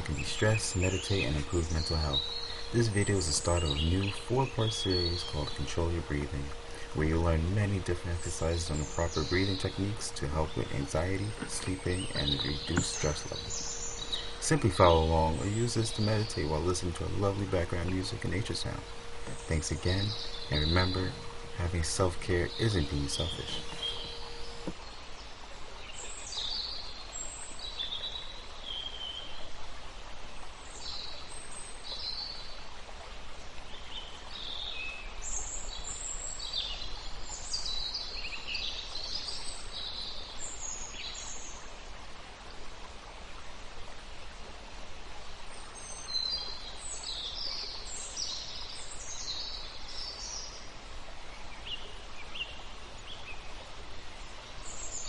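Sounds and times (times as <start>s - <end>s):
birds chirping and singing: 0.0s - 24.8s
steady background hiss: 0.0s - 55.0s.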